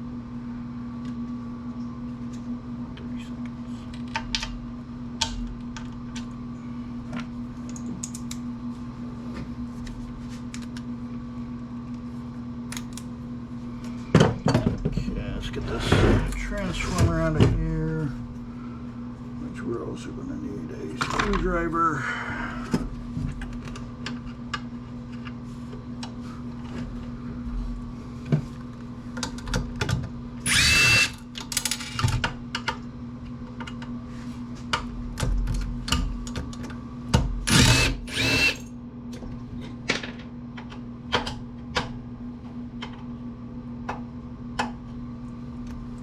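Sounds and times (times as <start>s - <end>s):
power drill whining: 30.4s - 31.2s, 37.5s - 38.6s.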